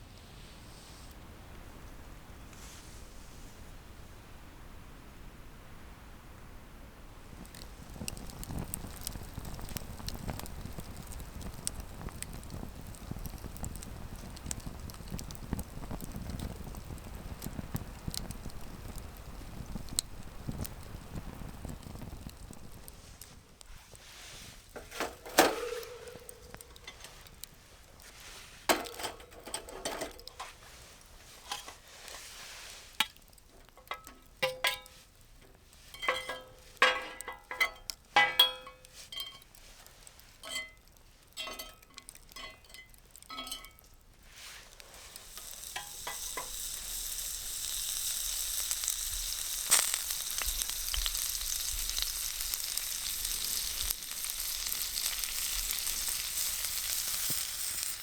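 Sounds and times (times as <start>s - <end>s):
food sizzling in skillet: 7.3s - 33.3s, 34.2s - 58.0s
utensils clinking against skillet: 24.8s - 27.4s, 28.7s - 30.6s, 31.4s - 32.3s, 33.0s - 35.1s, 35.8s - 39.6s, 40.4s - 44.0s, 45.0s - 46.9s.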